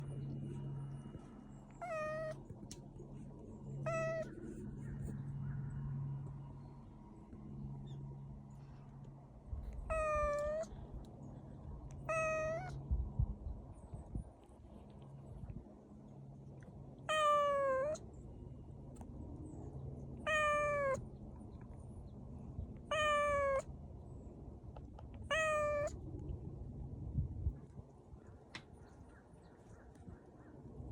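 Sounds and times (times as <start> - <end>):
low hum: 0.0 - 17.1, 18.0 - 20.3
cat meowing: 1.8 - 2.4, 3.8 - 4.3, 9.9 - 10.7, 12.1 - 12.8, 17.1 - 18.0, 20.3 - 21.0, 22.9 - 23.6, 25.3 - 25.9.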